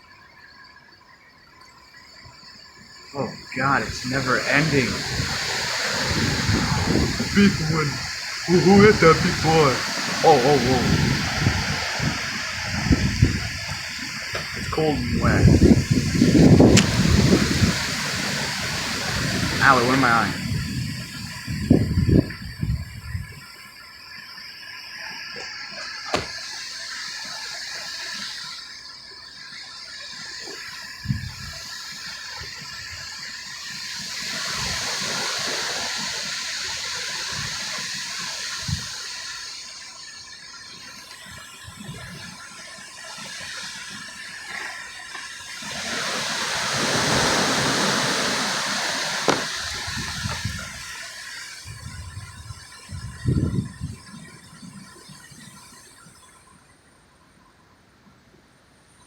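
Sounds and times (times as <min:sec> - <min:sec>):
heavy wind-driven rain: 0:03.0 - 0:23.5, 0:43.1 - 0:54.3
short thumps: 0:26.1 - 0:26.4, 0:49.3 - 0:49.5.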